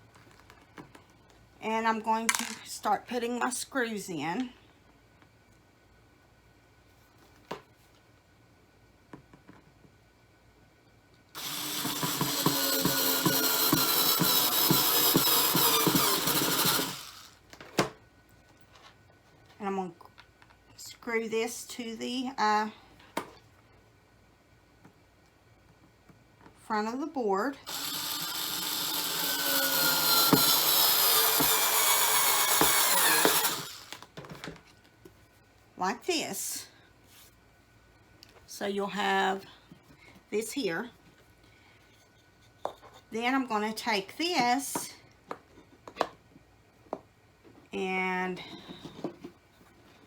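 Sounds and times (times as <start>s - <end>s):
power drill driving screw into wood: 11.4s - 17.4s, 27.7s - 34.1s.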